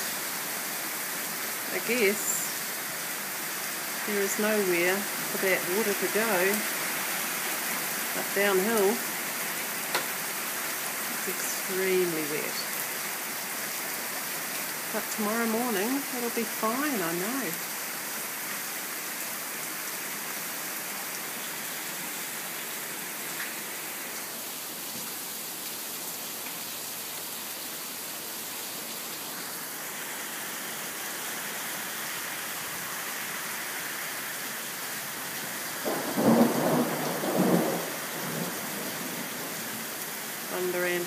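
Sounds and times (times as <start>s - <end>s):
heavy rain pouring: 0.0s - 41.0s
loud rumble of thunder: 35.8s - 39.5s.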